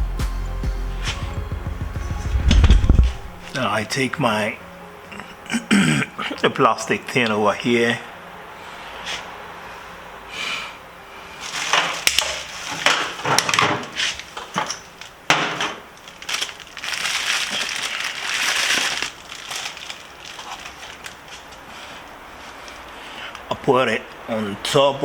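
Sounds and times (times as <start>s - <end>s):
crinkling rustle: 11.4s - 23.0s
plastic parts clicking and rattling: 11.5s - 21.4s.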